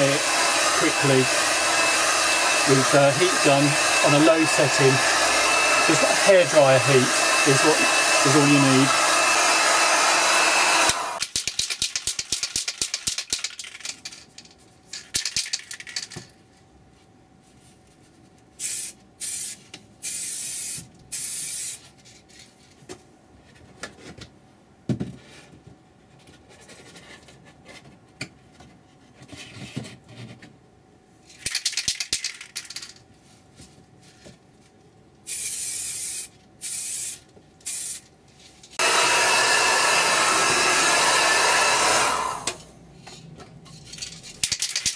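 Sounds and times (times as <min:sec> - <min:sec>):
heat gun running: 0:00.0 - 0:11.3, 0:38.8 - 0:42.7
aerosol can mixing ball rattling: 0:11.2 - 0:14.4
spray paint hissing: 0:18.6 - 0:21.8, 0:35.3 - 0:38.0.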